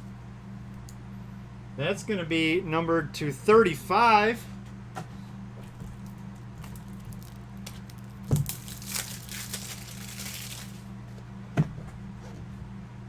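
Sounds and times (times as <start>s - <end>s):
plastic packaging crinkling: 5.8s - 11.0s.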